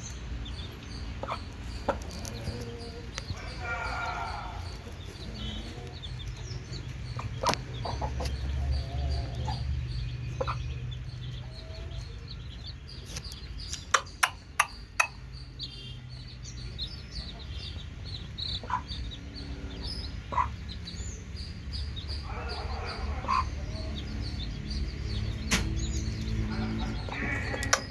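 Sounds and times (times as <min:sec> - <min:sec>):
chicks peeping: 0:00.0 - 0:27.9
chicken clucking: 0:01.1 - 0:13.2, 0:17.2 - 0:20.7, 0:22.0 - 0:24.5, 0:25.2 - 0:27.9
sharp clicks: 0:13.1 - 0:15.2, 0:25.4 - 0:25.8.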